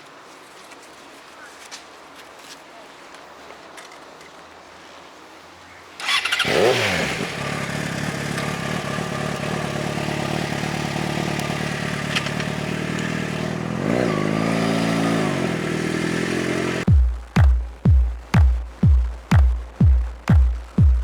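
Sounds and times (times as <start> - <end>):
motorcycle engine starting and idling: 6.0 - 21.0.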